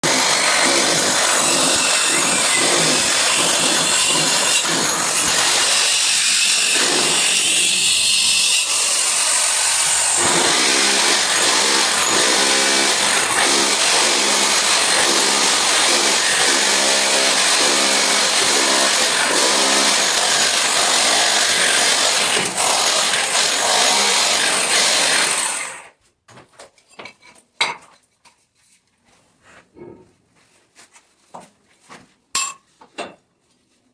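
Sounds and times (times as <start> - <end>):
power tool cutting: 0.0 - 25.9.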